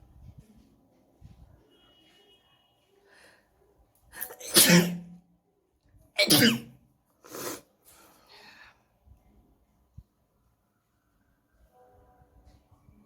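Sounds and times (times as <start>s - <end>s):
woman sneezing: 4.2s - 5.1s, 6.2s - 6.7s.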